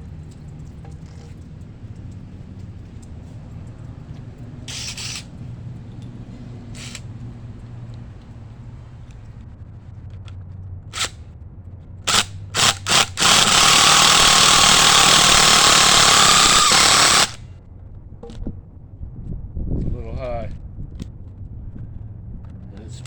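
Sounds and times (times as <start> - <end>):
impact driver hammering: 12.1 - 17.4.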